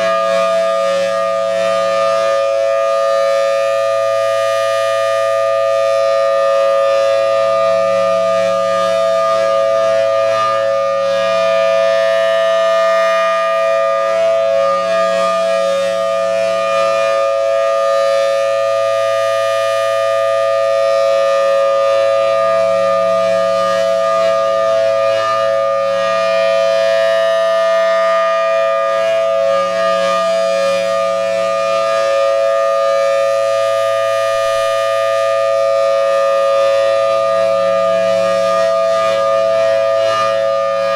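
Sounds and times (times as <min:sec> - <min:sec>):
warning siren two-note tone: 0:00.0 - 0:40.9.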